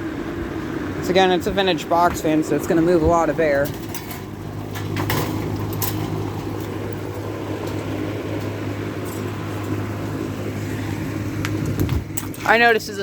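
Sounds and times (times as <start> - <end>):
box fan running: 0.0 - 13.0.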